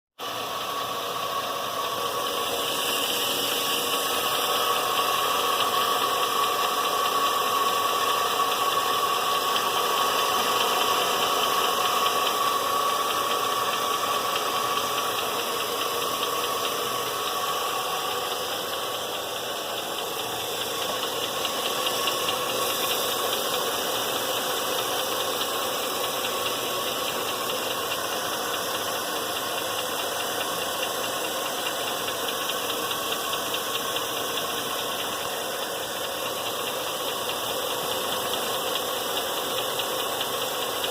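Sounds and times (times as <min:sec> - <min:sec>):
engine running with ticking: 0:00.2 - 0:40.9.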